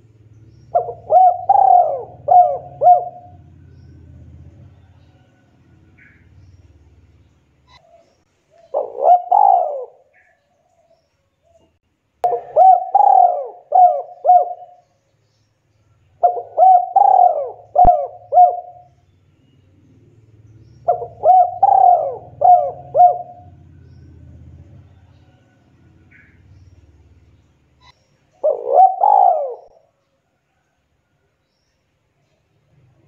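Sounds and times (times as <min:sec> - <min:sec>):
dove cooing: 0:00.0 - 0:06.2, 0:07.7 - 0:10.4, 0:12.2 - 0:14.9, 0:16.2 - 0:19.0, 0:20.8 - 0:26.7, 0:27.8 - 0:29.9.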